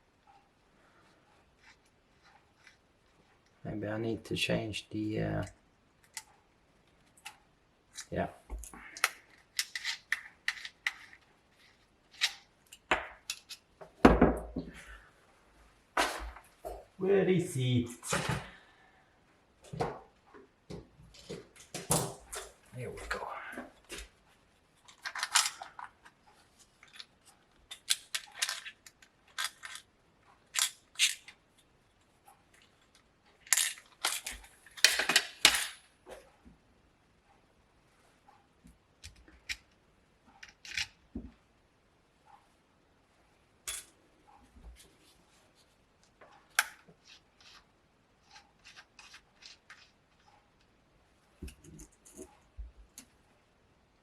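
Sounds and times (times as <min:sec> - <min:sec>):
small metal tool parts clicking: 0:09.0 - 0:11.2, 0:27.7 - 0:29.9, 0:30.5 - 0:31.4.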